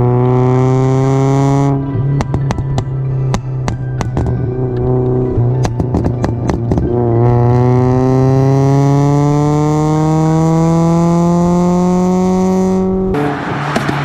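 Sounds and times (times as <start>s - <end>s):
car engine accelerating: 0.0s - 14.0s
exhaust pops and crackles: 2.2s - 7.1s, 13.1s - 14.0s.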